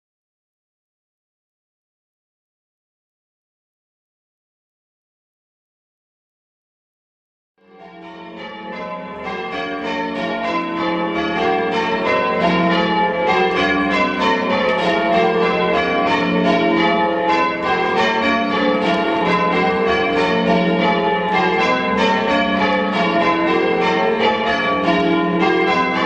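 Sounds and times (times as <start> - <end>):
church bells ringing changes: 7.6 - 26.0.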